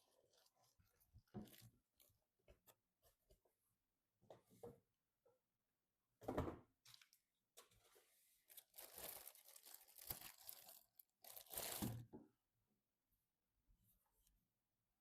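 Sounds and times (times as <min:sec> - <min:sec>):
packaging crinkling and tearing: 0:08.5 - 0:12.0.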